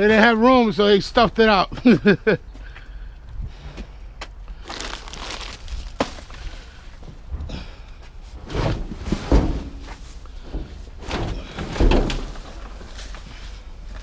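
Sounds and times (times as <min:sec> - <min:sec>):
heavy items knocking and thudding: 0:05.2 - 0:13.8.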